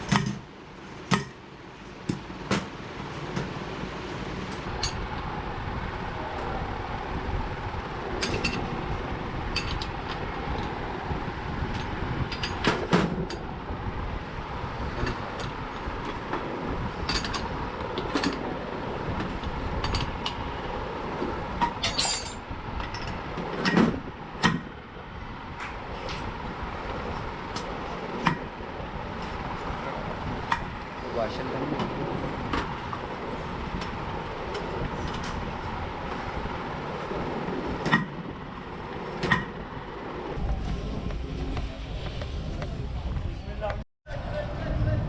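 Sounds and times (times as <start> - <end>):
steady low rumble: 0.0 - 45.0
metal tools clinking and knocking: 21.8 - 22.4.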